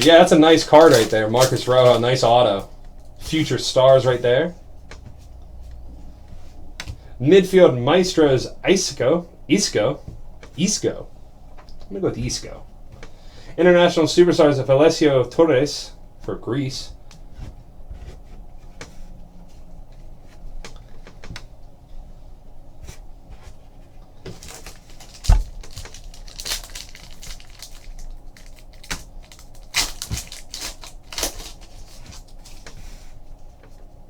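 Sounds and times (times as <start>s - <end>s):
foil wrappers crinkling and tearing: 0.0s - 4.1s, 24.3s - 32.7s.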